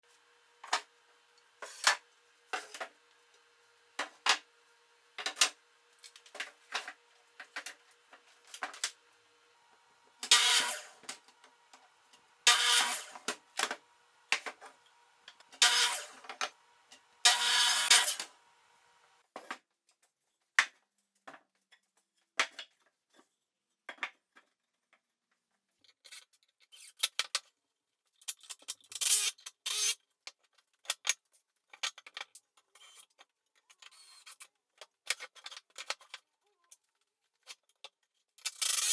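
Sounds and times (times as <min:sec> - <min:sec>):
tools and parts clicking: 0:28.1 - 0:38.9.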